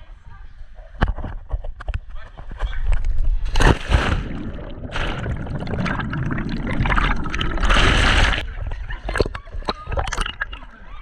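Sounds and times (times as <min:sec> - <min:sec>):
water sloshing and gurgling: 0:02.9 - 0:10.8
rushing water splash: 0:03.5 - 0:08.6.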